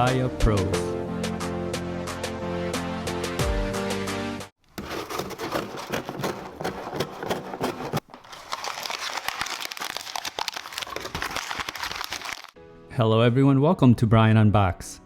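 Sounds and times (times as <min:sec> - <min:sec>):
packaging crinkling and rustling: 0:04.7 - 0:12.6.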